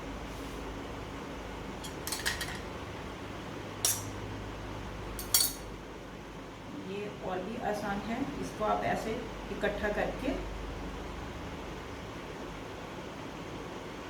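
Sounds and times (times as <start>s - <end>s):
utensil clinking against dish: 1.8s - 2.7s, 3.8s - 4.2s, 5.2s - 5.7s.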